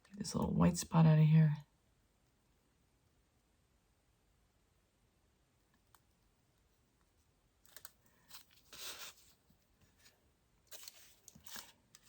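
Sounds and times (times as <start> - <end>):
soft rustling: 5.8 - 12.0.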